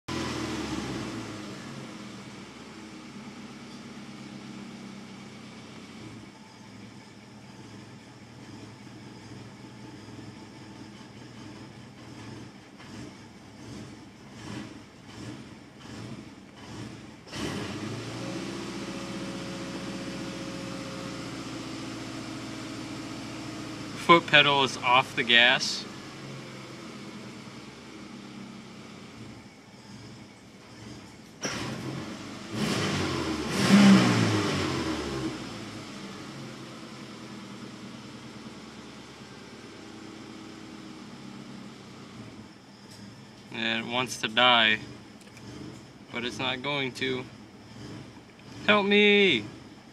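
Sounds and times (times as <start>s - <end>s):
car engine revving and idling: 0.0s - 49.9s
car engine idling roughly: 1.9s - 17.3s.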